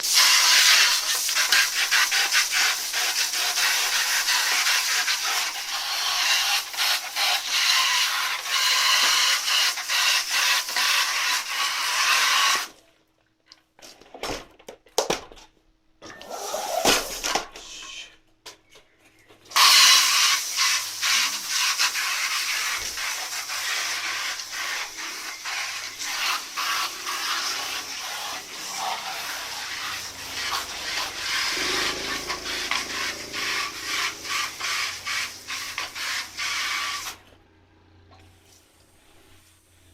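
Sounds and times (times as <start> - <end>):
scrubbing a sooty stove: 0.0 - 12.6, 19.6 - 37.2.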